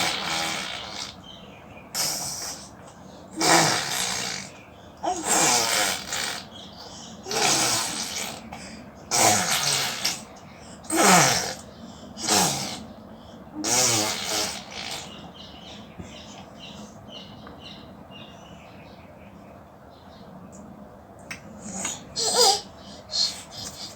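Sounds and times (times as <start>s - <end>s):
baby imitating car engine: 0.0s - 1.2s, 1.9s - 12.9s, 13.6s - 15.3s, 21.6s - 23.9s.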